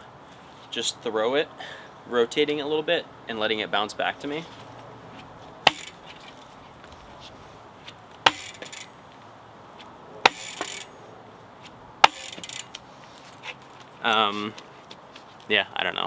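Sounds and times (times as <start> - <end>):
bike wheel thudding on ground: 5.2 - 7.0, 7.8 - 9.0, 9.8 - 10.9, 11.6 - 13.8.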